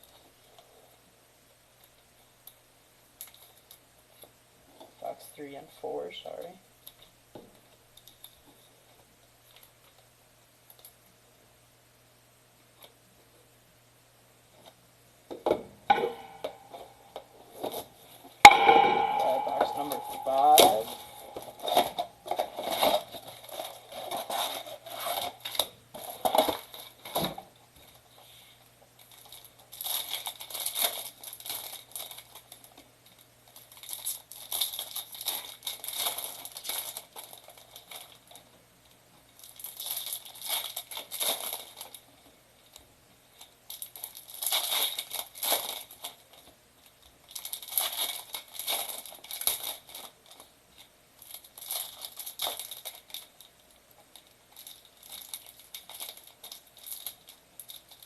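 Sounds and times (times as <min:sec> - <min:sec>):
plastic wrappers crinkling and tearing: 0:21.6 - 0:28.3, 0:29.0 - 0:58.0.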